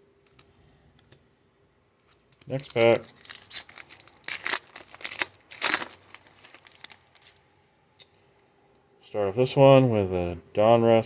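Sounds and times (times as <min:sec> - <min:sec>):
wrapper tearing and crinkling: 0:02.4 - 0:07.4.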